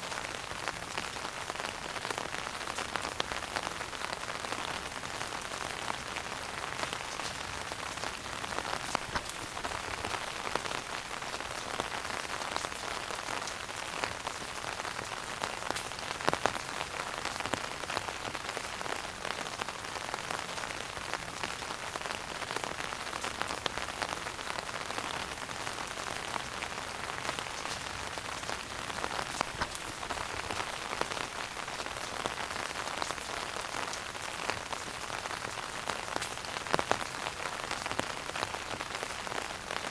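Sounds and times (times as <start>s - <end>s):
wood fire crackling: 5.5s - 18.7s, 24.4s - 39.0s.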